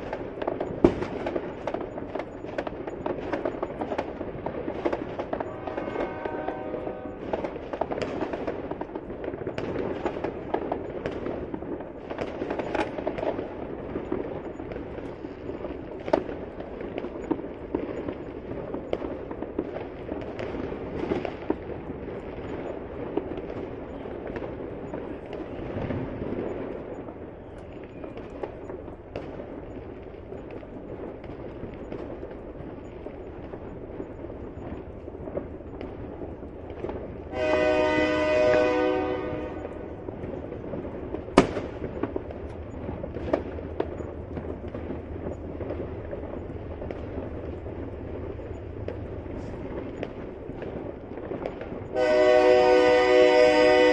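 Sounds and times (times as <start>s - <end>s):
firecrackers popping and crackling: 0.0s - 53.9s
horn sounding: 52.0s - 53.9s.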